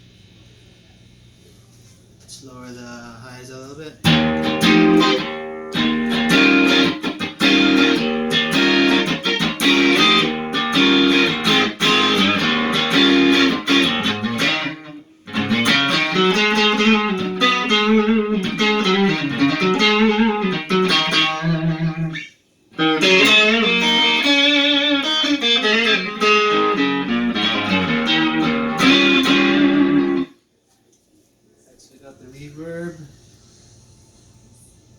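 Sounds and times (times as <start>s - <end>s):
overdriven electric guitar: 4.0s - 30.4s.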